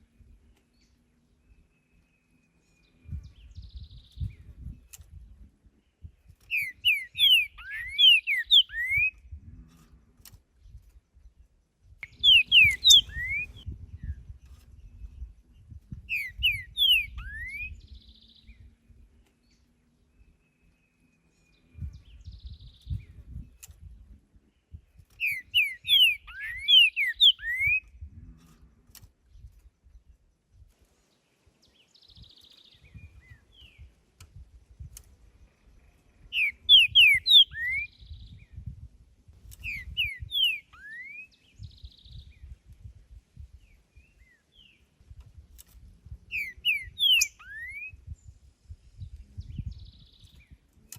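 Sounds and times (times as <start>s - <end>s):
bird singing slurred whistles: 6.5s - 9.2s, 12.0s - 14.1s, 16.1s - 18.7s, 25.2s - 27.9s, 36.3s - 38.6s, 39.6s - 42.5s, 46.3s - 48.4s
buzzy bird notes: 12.1s - 13.7s.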